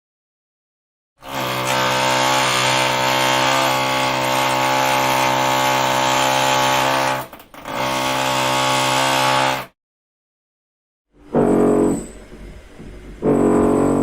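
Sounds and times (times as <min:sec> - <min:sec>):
electric drill whining: 0:01.2 - 0:09.7.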